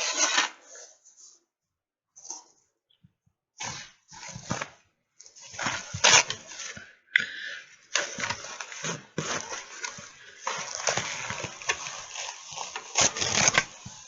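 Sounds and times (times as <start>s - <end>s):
rustling smacking and clicking: 7.9s - 14.0s.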